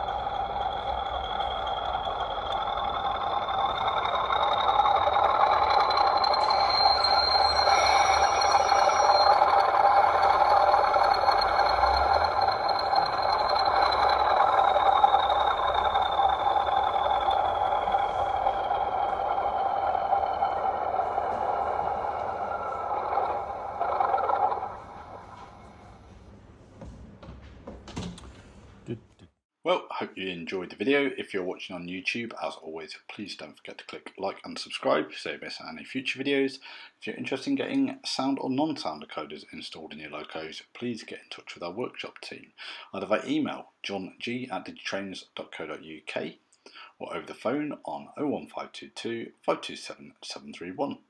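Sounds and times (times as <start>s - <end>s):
turbocharger whistle: 0.0s - 25.9s
diesel locomotive engine running: 0.0s - 26.6s.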